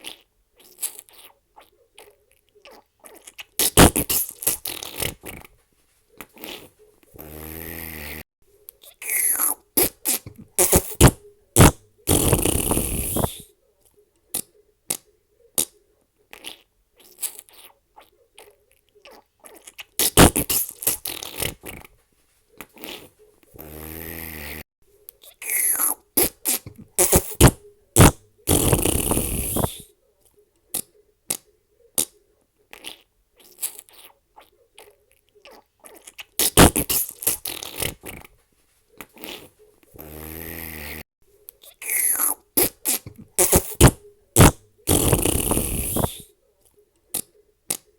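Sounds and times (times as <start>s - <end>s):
fart sound effects: 3.6s - 5.5s, 6.4s - 8.2s, 9.0s - 13.4s, 20.0s - 21.9s, 22.8s - 24.6s, 25.4s - 29.8s, 36.4s - 38.3s, 39.2s - 41.0s, 41.8s - 46.2s.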